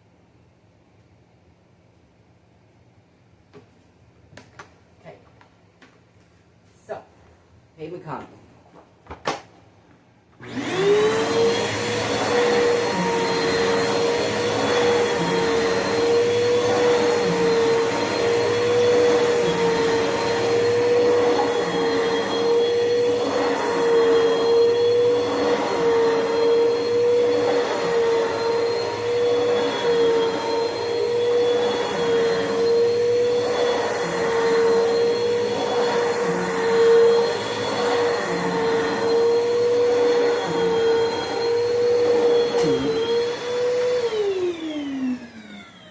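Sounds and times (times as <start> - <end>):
vacuum cleaner motor whining: 10.4 - 45.9.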